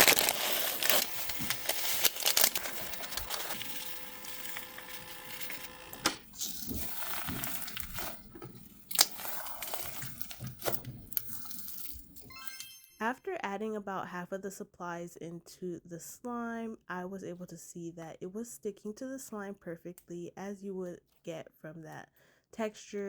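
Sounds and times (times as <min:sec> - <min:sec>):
slime crinkling and crackling: 0:00.0 - 0:12.4.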